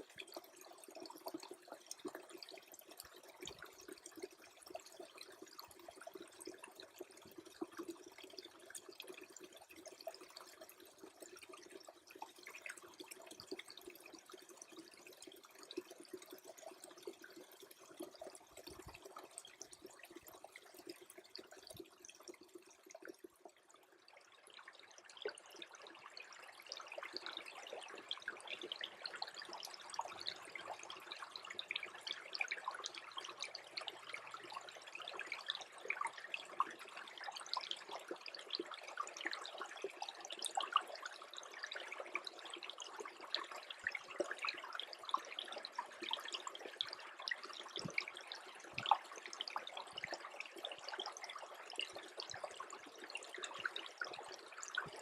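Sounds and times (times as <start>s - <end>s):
stream trickling with ticks and pops: 0.0s - 55.0s.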